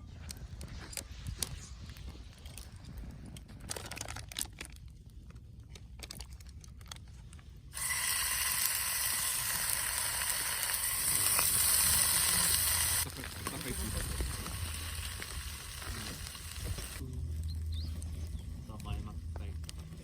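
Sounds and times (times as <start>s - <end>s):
food sizzling in hot pan: 7.8s - 17.0s.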